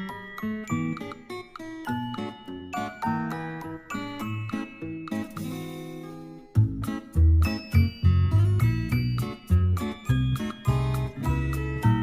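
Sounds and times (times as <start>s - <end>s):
background music with plucked guitar: 0.0s - 12.0s.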